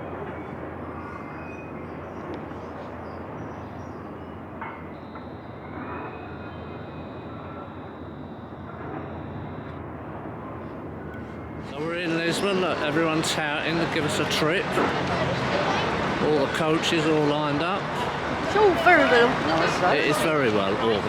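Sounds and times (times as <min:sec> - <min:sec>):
faint high-pitched tone: 0:04.2 - 0:11.6.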